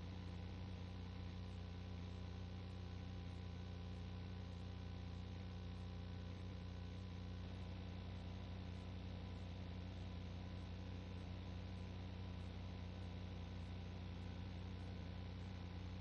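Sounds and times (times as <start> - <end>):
low electrical hum: 0.0 - 16.0.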